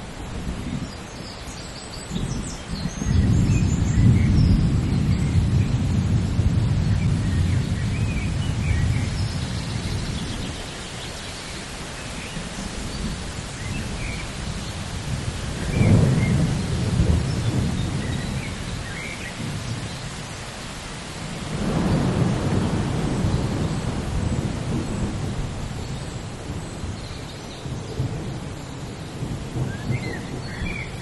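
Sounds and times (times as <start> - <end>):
steady rain: 0.0 - 31.0
rolling thunder: 2.2 - 10.5, 12.2 - 20.2, 21.2 - 25.8.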